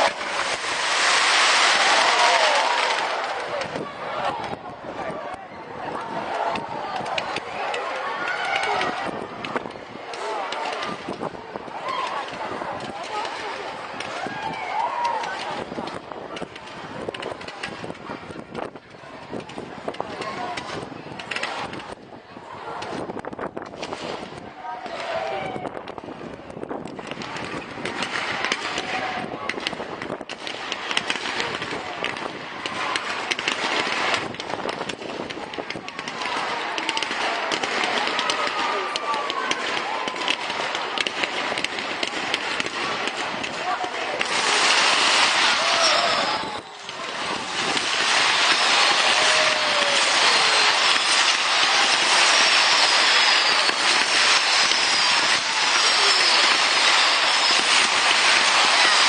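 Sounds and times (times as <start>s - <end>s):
whistling firework shells: 0.0s - 3.8s, 44.2s - 59.0s
fireworks cracking and popping: 0.0s - 59.0s
people's voices: 0.0s - 59.0s.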